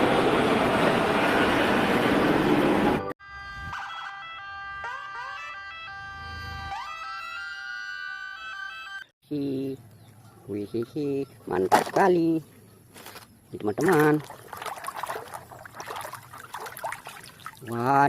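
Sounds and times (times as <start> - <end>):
electronic siren with swooping tones: 0.4 - 9.0.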